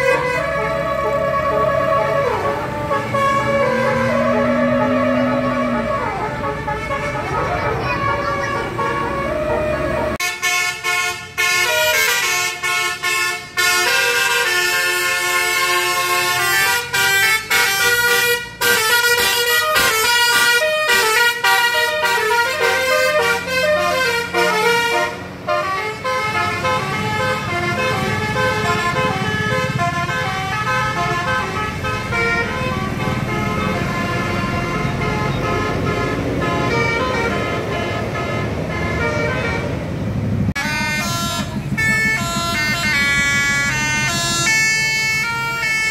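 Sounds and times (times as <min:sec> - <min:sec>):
multi-tone air horn tune: 0:00.0 - 0:39.8, 0:40.6 - 0:45.9
low rumble: 0:40.2 - 0:44.4.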